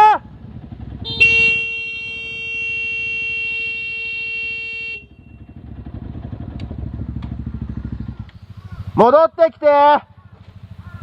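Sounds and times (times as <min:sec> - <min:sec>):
motorcycle engine idling: 0:00.0 - 0:11.0
horn blast: 0:01.0 - 0:05.7.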